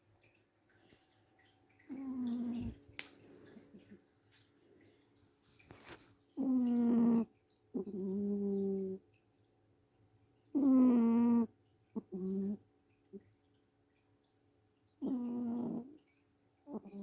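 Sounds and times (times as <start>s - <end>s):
cat snoring: 1.9s - 2.8s, 6.4s - 9.0s, 10.4s - 12.6s, 15.0s - 16.0s, 16.7s - 17.0s.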